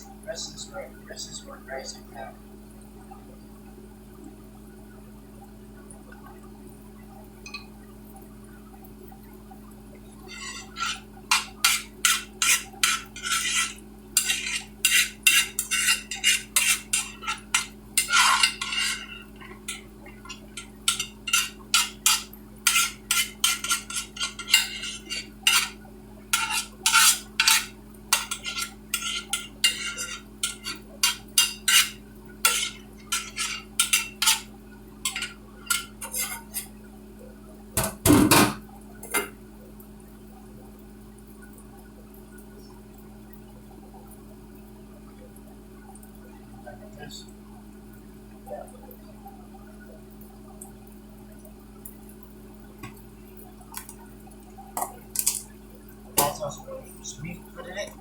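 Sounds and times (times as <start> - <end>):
metal spoon scraping a pot: 10.2 - 36.7.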